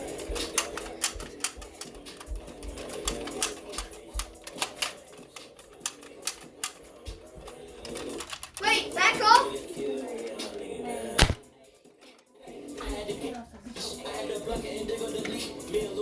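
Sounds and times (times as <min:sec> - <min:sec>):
faint background music: 0:00.0 - 0:16.0
shotgun clicks and taps: 0:00.3 - 0:08.6, 0:11.2 - 0:11.4.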